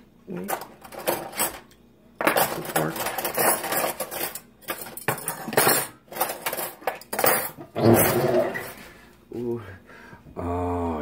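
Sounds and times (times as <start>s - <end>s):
low voice humming: 10.3s - 11.0s.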